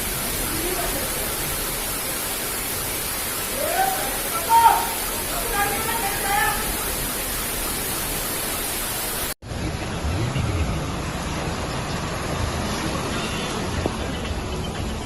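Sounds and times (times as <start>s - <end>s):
heavy rain hiss: 0.0s - 14.6s
rushing floodwater: 0.0s - 15.0s
low rumble: 9.5s - 14.0s.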